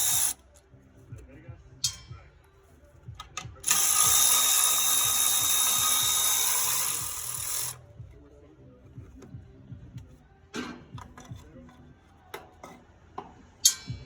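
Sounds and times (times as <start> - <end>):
handheld power tool running: 0.0 - 0.4, 3.6 - 7.8.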